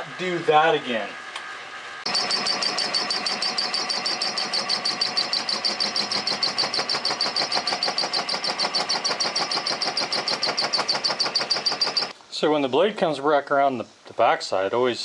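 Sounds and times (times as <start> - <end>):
lathe high whine: 2.1 - 12.1.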